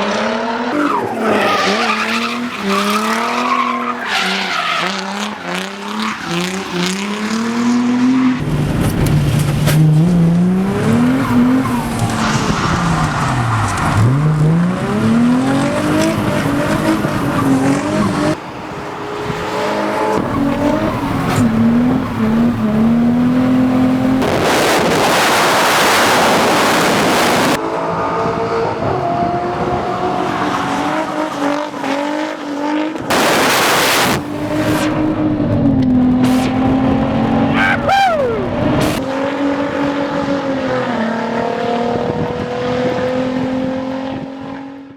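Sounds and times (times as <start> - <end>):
car engine revving hard: 0.0 - 44.9
tyres squealing: 0.7 - 6.9, 37.4 - 39.0.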